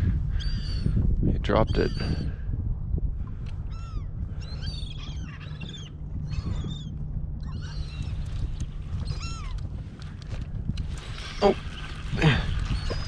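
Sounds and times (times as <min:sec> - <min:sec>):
low rumble: 0:02.3 - 0:13.0
gulls calling: 0:03.6 - 0:13.0.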